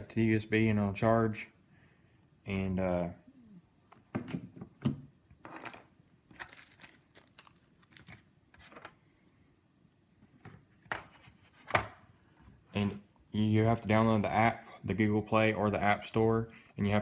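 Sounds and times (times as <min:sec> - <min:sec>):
packaging crinkling and rustling: 0:06.3 - 0:09.0.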